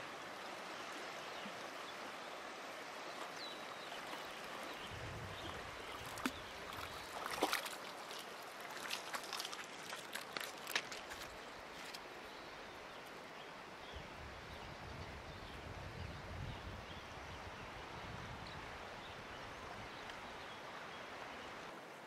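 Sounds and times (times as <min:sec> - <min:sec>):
river water rushing: 0:00.0 - 0:13.8.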